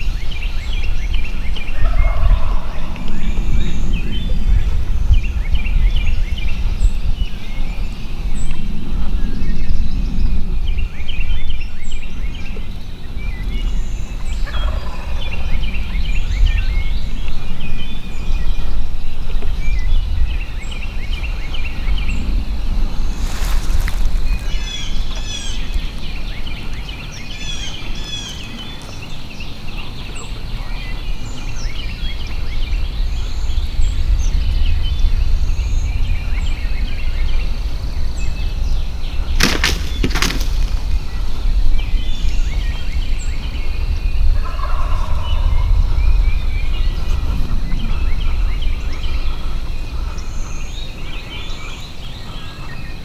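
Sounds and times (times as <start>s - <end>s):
songbirds singing: 0.0s - 53.0s
distant turkey gobbling: 39.4s - 41.4s.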